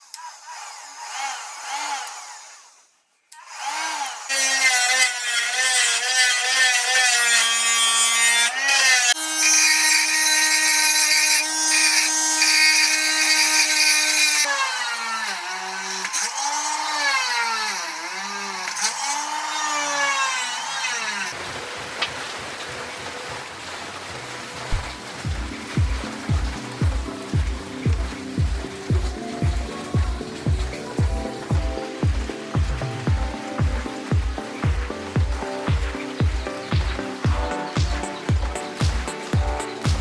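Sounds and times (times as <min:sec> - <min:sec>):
small electric motor running: 0:00.0 - 0:21.4, 0:24.7 - 0:40.0.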